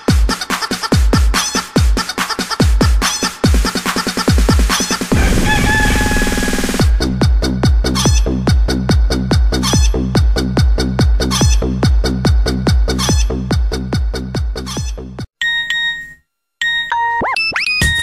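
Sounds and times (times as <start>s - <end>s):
dance beat ringtone: 4.3s - 7.1s, 15.4s - 18.0s
chicken clucking and crowing: 5.1s - 7.0s
sweeping electronic tones: 5.1s - 7.0s
short electronic ringtone beeps: 15.4s - 18.0s.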